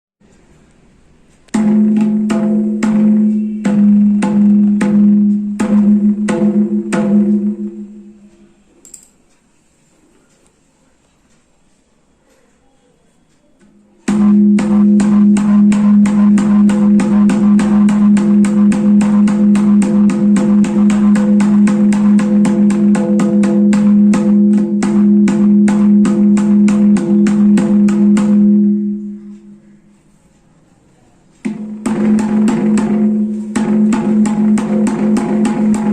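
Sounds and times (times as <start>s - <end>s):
hand drum strokes ringing: 1.6s - 8.6s, 14.1s - 29.8s, 31.4s - 35.9s.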